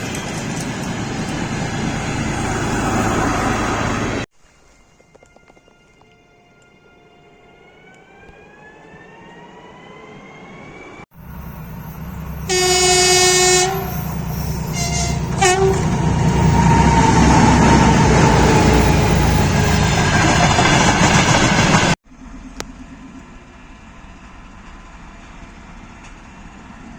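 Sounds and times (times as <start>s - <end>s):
train rumbling and rattling past: 0.0s - 4.3s, 7.6s - 26.9s
train horn blasts: 11.2s - 19.2s.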